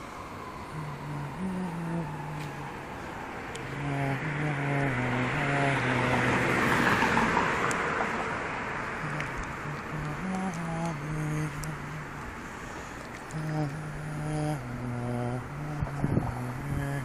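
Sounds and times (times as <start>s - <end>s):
car passing: 0.0s - 16.8s
low tune of held notes: 9.0s - 12.4s.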